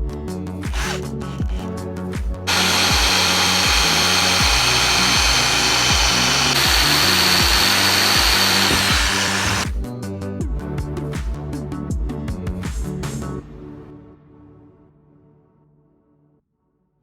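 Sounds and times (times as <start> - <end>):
power tool running: 0.7 - 1.7, 2.5 - 9.7
background music with beat: 9.7 - 13.8.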